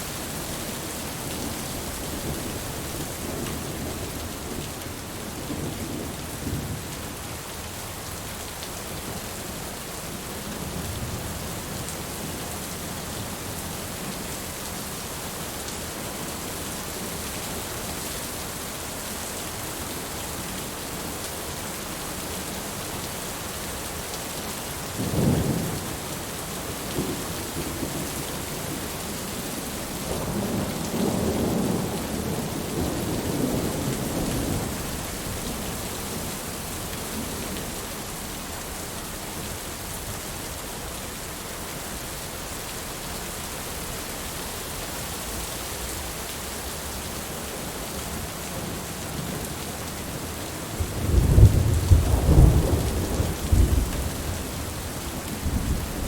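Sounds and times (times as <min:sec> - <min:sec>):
heavy rain falling: 0:00.0 - 0:56.0
rolling rumble of thunder: 0:30.1 - 0:35.7, 0:50.8 - 0:56.0
sharp thunderclap: 0:50.8 - 0:54.2.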